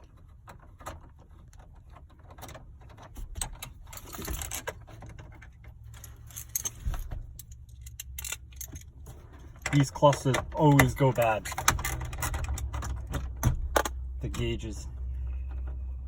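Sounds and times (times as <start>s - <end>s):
hand tools clicking and rattling: 0.7s - 14.0s.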